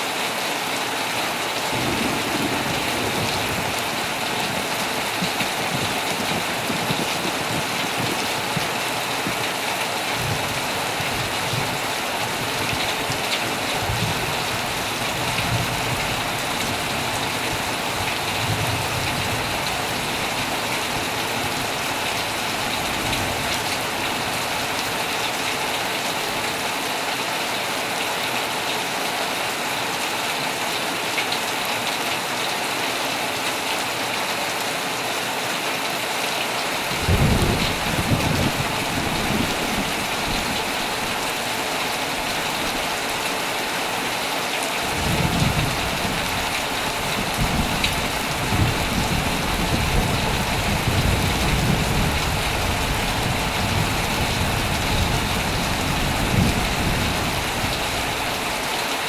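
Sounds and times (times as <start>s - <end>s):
heavy rain on a tent: 0.0s - 59.0s
thunder rumbling: 1.7s - 9.4s, 36.9s - 43.2s, 44.9s - 58.6s.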